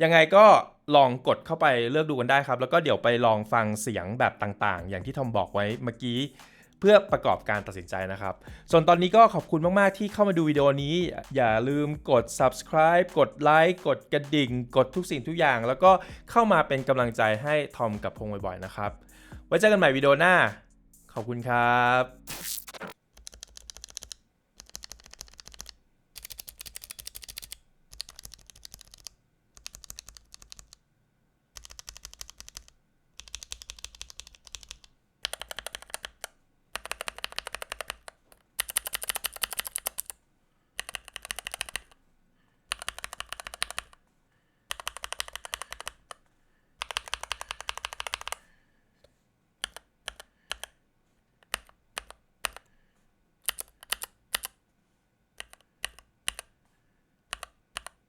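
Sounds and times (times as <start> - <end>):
mechanical keyboard typing: 23.1 - 30.8, 31.6 - 40.2, 40.8 - 42.0, 42.7 - 44.0, 44.7 - 46.2, 46.8 - 48.4, 49.6 - 50.8, 51.4 - 52.7, 53.4 - 54.6, 55.4 - 56.5, 57.3 - 58.0.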